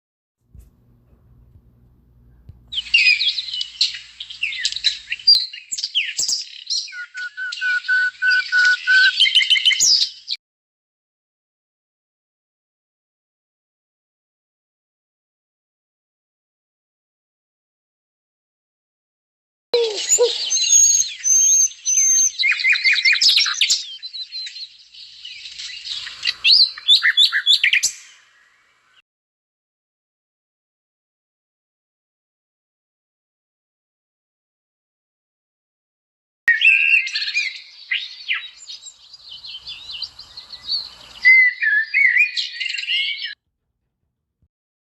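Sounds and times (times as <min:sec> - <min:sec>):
songbird chirping and singing: 0:02.7 - 0:10.4, 0:19.8 - 0:29.0, 0:36.5 - 0:43.4.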